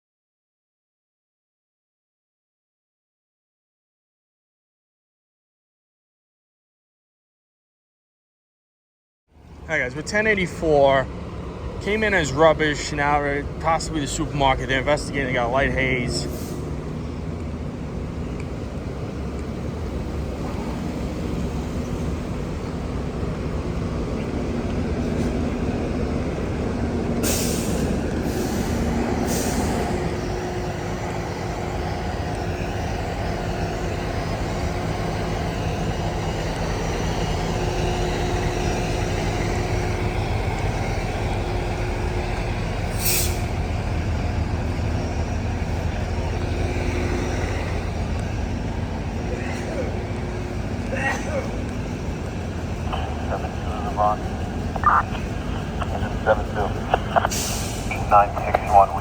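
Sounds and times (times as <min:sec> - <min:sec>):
diesel engines idling: 0:09.4 - 0:59.0
air brake hisses: 0:27.2 - 0:29.9, 0:42.9 - 0:43.5.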